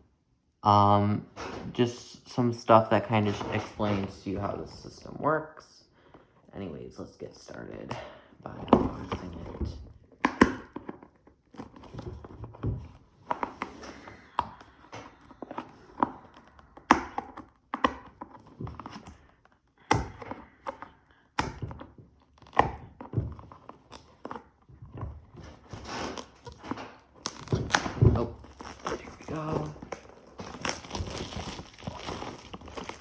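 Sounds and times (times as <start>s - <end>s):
packaging scraping and tearing: 25.4s - 33.0s.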